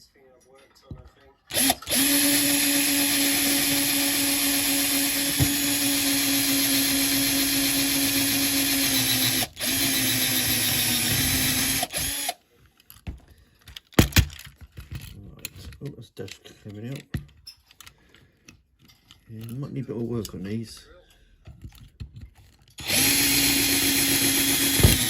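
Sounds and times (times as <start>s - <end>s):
electric drill drilling rivets: 1.5s - 12.4s, 22.7s - 25.0s.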